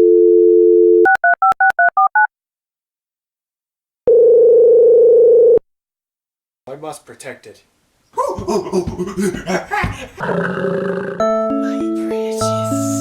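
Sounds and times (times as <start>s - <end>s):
telephone ringing tone: 0.0s - 2.3s, 4.1s - 5.6s
telephone dial tone: 4.1s - 5.6s.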